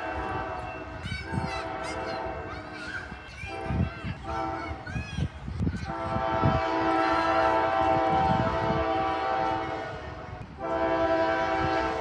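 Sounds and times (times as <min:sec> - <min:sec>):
locomotive air horn blasts: 0:00.0 - 0:02.4, 0:05.9 - 0:12.0.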